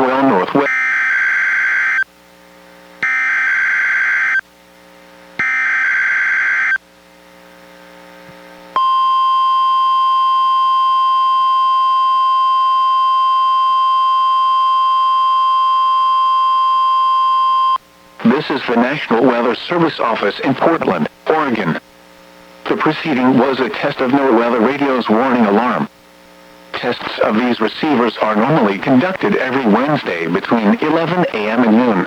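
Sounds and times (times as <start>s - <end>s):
steady warning alarm tone: 0.0s - 2.1s, 3.0s - 4.4s, 5.4s - 6.8s, 8.8s - 17.8s.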